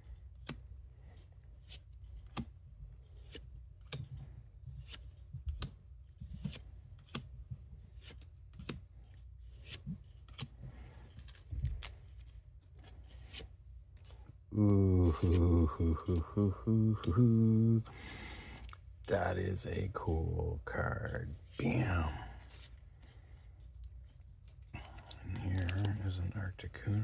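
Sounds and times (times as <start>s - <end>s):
cards and wrapper snapping: 24.5s - 26.2s.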